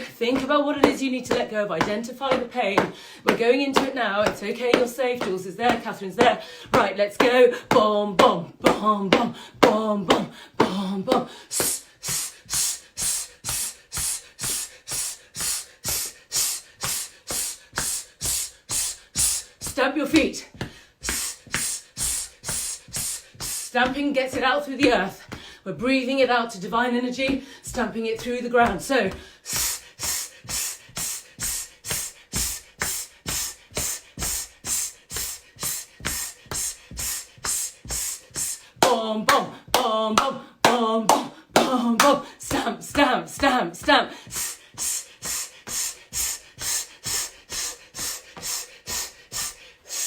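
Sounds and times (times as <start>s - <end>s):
feet stamping: 0.0s - 26.0s, 26.7s - 49.6s
person exhaling in forceful hisses: 11.4s - 19.7s, 29.3s - 38.7s, 44.2s - 50.0s.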